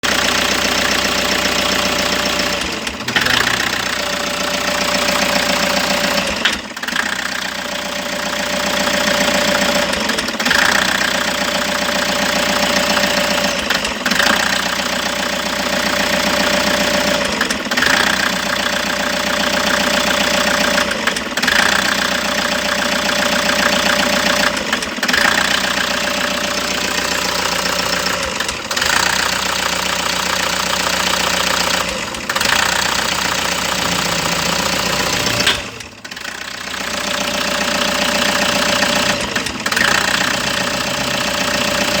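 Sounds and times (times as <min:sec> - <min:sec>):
engine running with misfire: 0:00.0 - 0:42.0.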